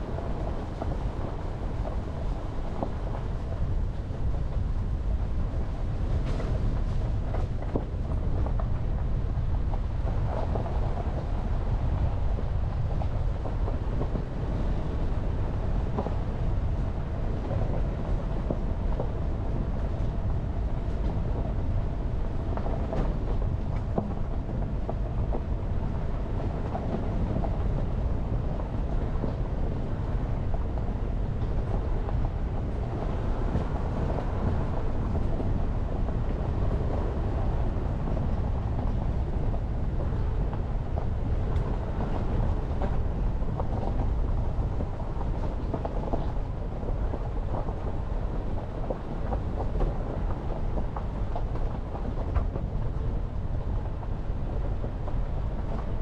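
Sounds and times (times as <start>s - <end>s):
car tyres and engine rumble: 0.0s - 56.0s.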